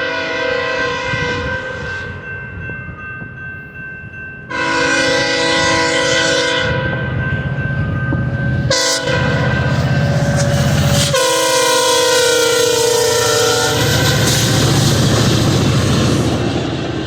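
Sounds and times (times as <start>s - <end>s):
train horn: 0.0s - 2.2s, 4.5s - 7.2s, 8.6s - 15.4s
low rumble of train: 0.0s - 17.0s.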